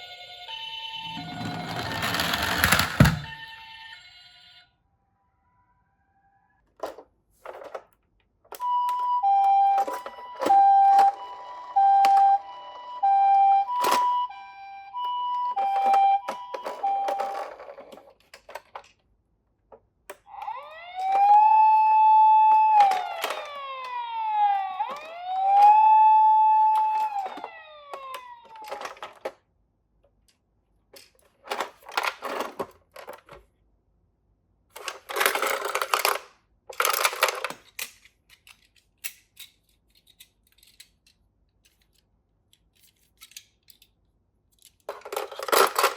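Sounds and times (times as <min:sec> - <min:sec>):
toy two-tone siren: 0:00.0 - 0:06.6, 0:08.5 - 0:18.0, 0:20.2 - 0:29.2
clattering: 0:01.1 - 0:03.4
wailing siren: 0:08.6 - 0:17.5, 0:20.2 - 0:29.1.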